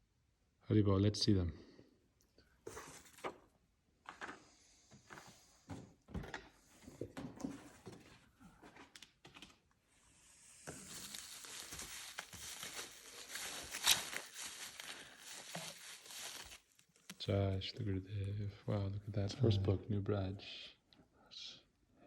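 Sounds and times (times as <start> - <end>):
packing material crinkling and tearing: 10.6 - 17.3.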